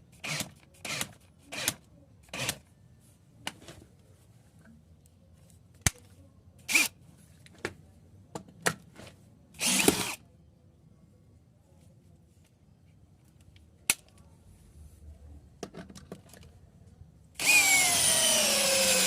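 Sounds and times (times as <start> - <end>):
cordless drill spinning up: 9.6 - 10.2, 17.4 - 19.0.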